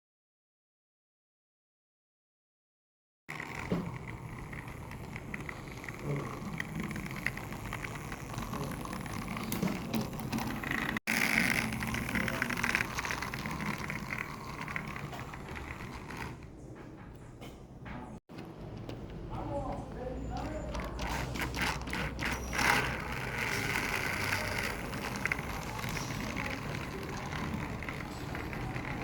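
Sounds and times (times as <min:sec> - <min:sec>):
toy train whirring and rattling: 0:03.3 - 0:16.5, 0:20.4 - 0:29.0.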